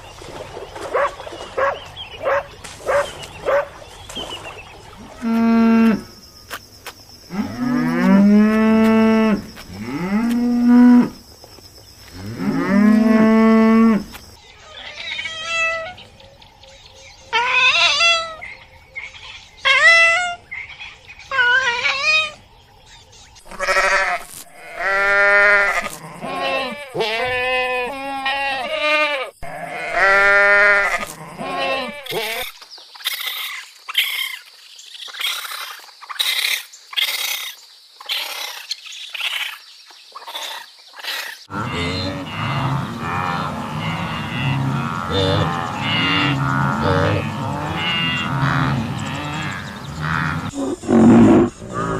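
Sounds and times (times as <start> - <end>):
cattle mooing: 41.5 - 51.9.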